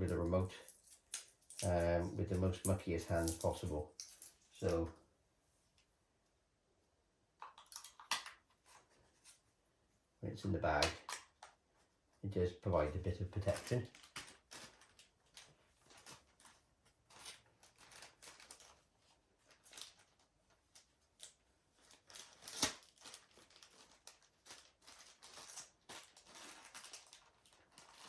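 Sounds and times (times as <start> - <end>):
plastic bag rustling: 13.4 - 28.0.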